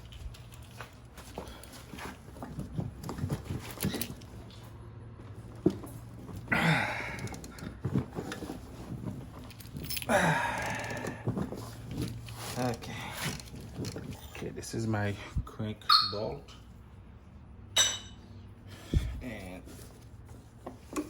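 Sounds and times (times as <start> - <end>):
breathy bursts: 6.5 - 7.6, 10.1 - 11.3
tools and parts clicking: 9.4 - 11.2.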